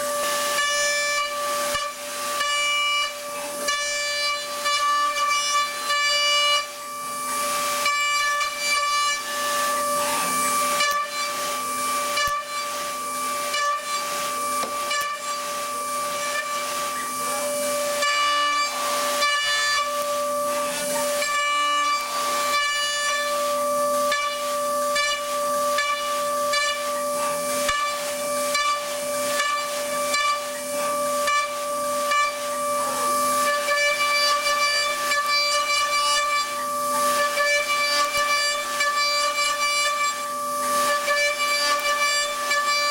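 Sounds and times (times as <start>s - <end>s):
cutting hiss: 0.0s - 42.9s
milling machine spindle whine: 0.0s - 42.9s.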